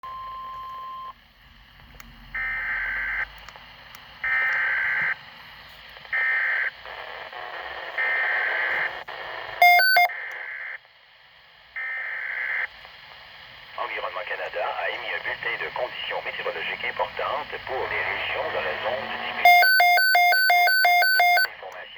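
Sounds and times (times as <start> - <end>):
sharp electronic beeps: 9.6 - 10.1, 18.0 - 21.5.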